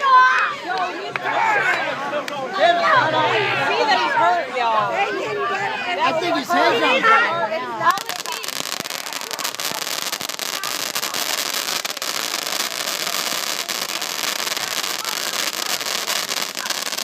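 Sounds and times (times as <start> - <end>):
fireworks crackling and popping: 7.9 - 17.0.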